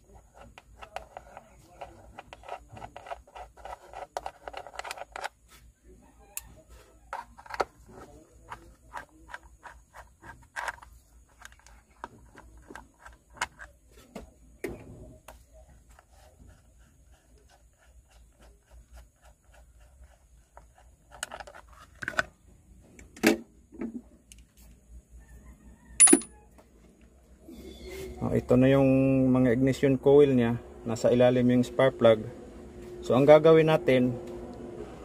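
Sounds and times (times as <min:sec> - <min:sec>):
metal parts knocking and clattering: 0:26.0 - 0:26.3.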